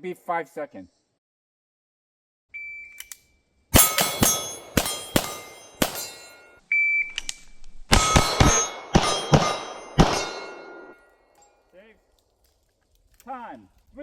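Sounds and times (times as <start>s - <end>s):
pistol shots: 3.8s - 6.4s, 7.9s - 10.9s
steel plates ringing: 3.8s - 6.6s, 7.9s - 11.1s.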